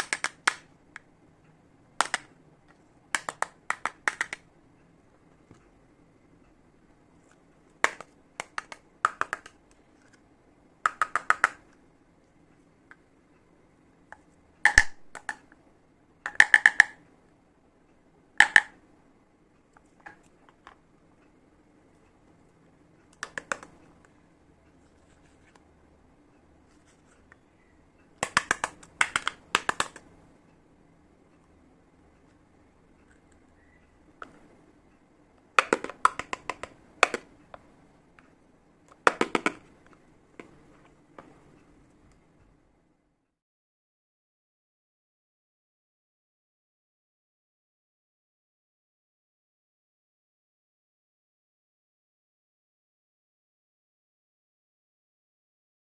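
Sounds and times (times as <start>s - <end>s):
toy kitchen pieces clicking: 0.0s - 0.7s, 2.0s - 2.3s, 3.2s - 4.5s, 14.7s - 15.5s, 16.3s - 17.0s, 18.4s - 18.8s, 23.1s - 23.8s, 28.2s - 30.0s, 35.6s - 37.3s.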